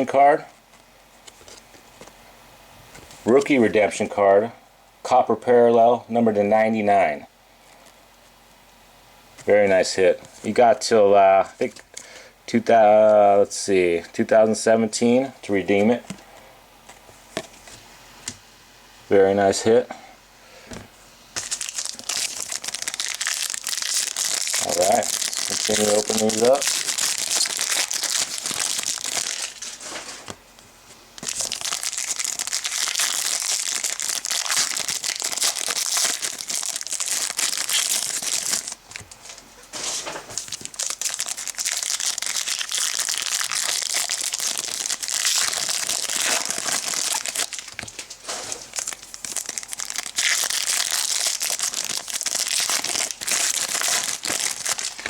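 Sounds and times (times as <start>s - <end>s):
foil wrappers crinkling and tearing: 21.4s - 30.4s, 31.1s - 55.0s.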